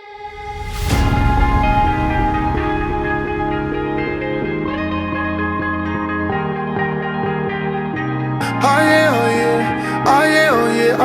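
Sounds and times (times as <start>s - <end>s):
low rumble: 0.0s - 7.3s.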